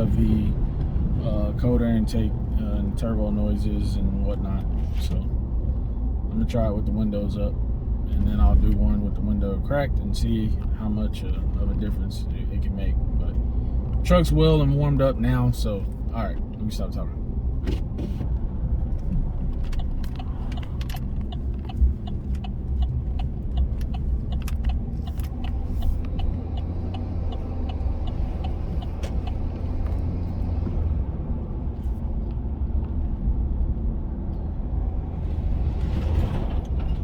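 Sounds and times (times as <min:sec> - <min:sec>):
pickup engine and road noise: 0:00.0 - 0:37.0
regular light ticking: 0:19.6 - 0:29.8.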